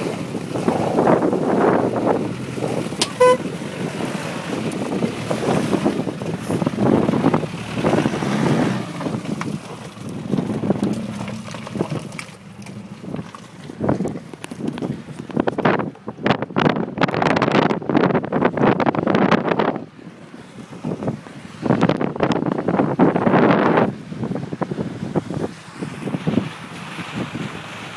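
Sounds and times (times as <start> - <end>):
vehicle driving off-road: 0.0 - 27.9
wind buffeting microphone: 0.0 - 27.9
short beep: 3.0 - 3.5.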